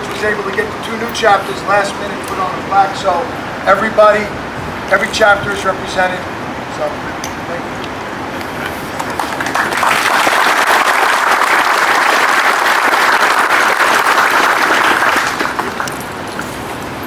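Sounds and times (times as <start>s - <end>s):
crowd applauding: 8.6s - 16.4s.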